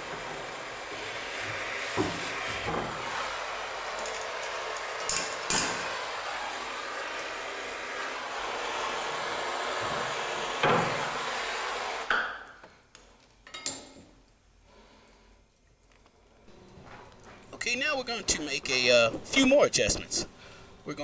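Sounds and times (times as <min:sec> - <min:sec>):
torch flame hissing: 0:00.0 - 0:12.1.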